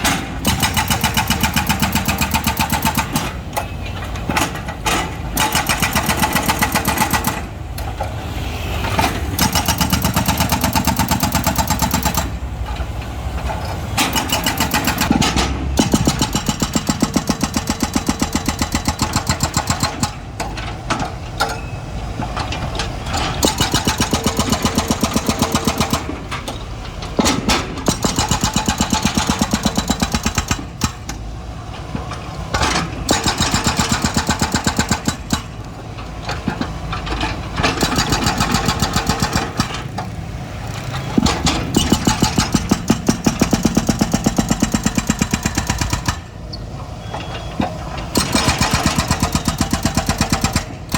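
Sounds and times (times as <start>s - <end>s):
excavator diesel engine pulsing: 0.0s - 50.9s.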